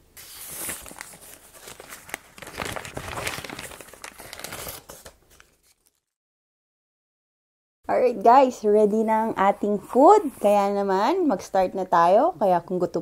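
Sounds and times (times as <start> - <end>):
paper packaging crinkling: 0.2 - 6.2.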